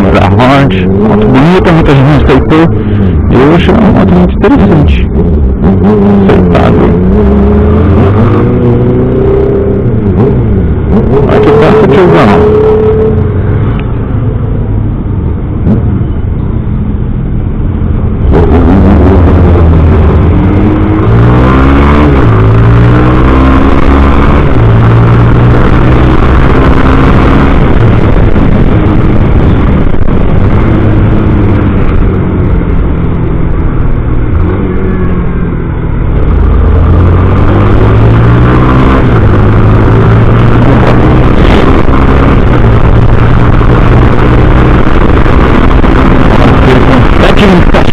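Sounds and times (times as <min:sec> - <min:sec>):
motorcycle engine exhaust growl: 0:17.9 - 0:47.9.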